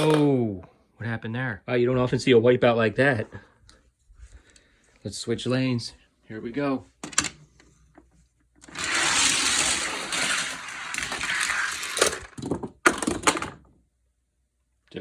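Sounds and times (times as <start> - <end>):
toy cars clacking: 8.6 - 13.6
toy cars rolling on plastic track: 8.6 - 13.6.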